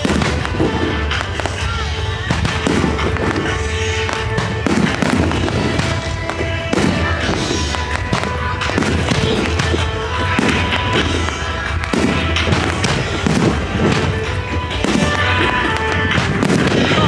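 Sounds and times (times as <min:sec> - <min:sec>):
fireworks bursting: 0:00.0 - 0:17.0
music: 0:00.0 - 0:17.0.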